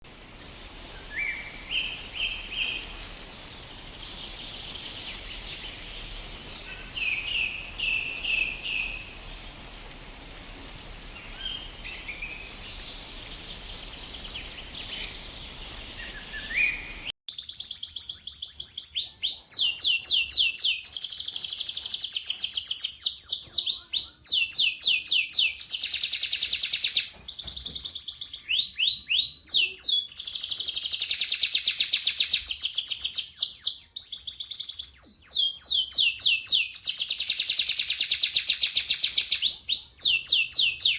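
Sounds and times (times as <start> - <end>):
background hiss: 0.1 - 17.1.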